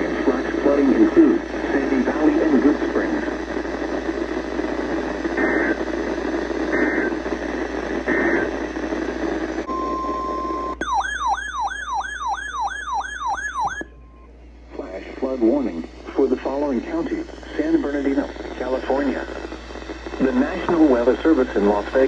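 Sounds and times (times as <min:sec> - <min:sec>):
downward sweeping alert alarm: 0:10.8 - 0:13.8
steady electronic tone: 0:10.8 - 0:13.8
radio static: 0:16.2 - 0:22.0.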